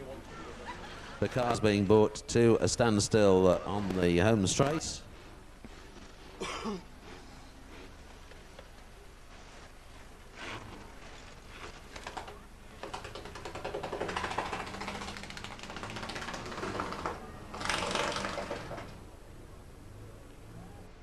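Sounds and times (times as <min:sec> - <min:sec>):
race car engines rattling: 0:12.8 - 0:19.2.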